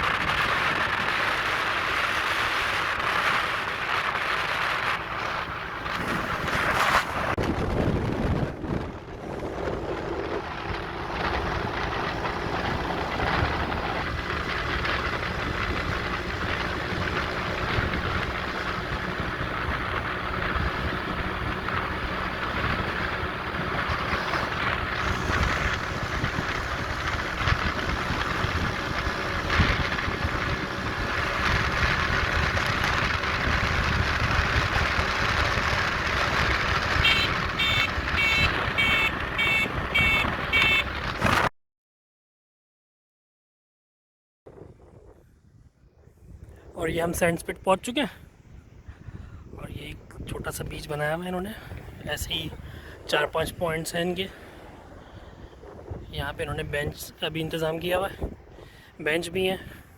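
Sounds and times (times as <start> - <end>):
vehicle road and engine noise: 0.0 - 41.5, 44.5 - 59.9
short high beeps: 37.1 - 40.9.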